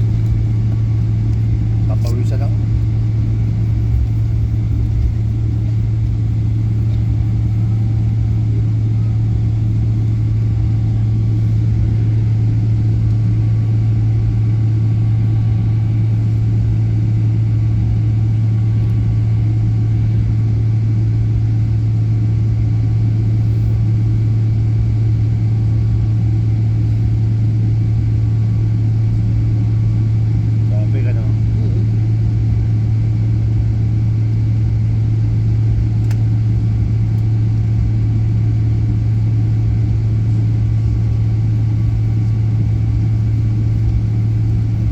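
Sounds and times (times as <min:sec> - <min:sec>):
jet engine cabin drone: 0:00.0 - 0:44.9.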